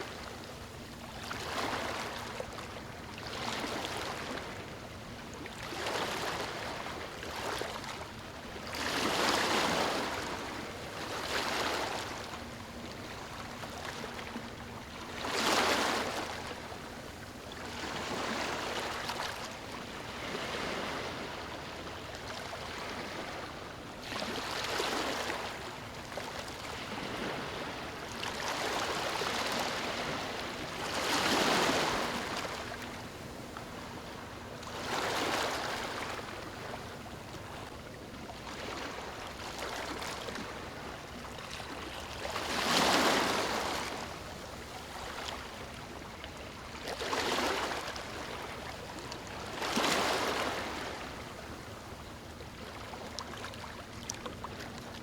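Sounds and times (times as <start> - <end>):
waves lapping on a beach: 0.0 - 55.0.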